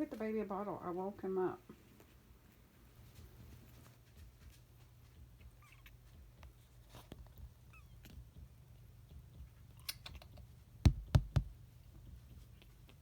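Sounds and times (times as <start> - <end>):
low steady hum: 0.0 - 13.0
faint clicks and rustles: 1.6 - 13.0
loud quick thumps: 10.9 - 11.6.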